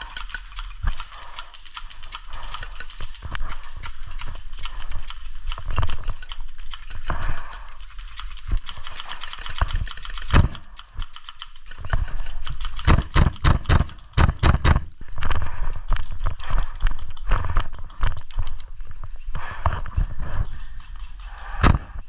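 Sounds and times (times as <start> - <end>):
airsoft rifle automatic clicks: 0.0 - 15.0.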